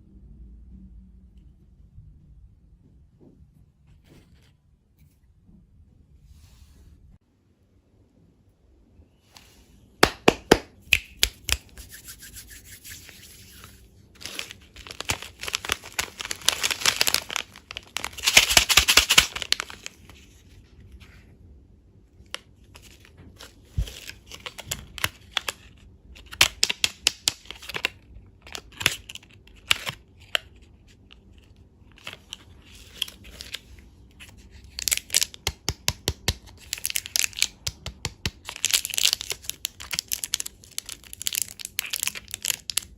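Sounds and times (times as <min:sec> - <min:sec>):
candy wrappers crinkling: 0:13.6 - 0:20.4, 0:22.3 - 0:42.9.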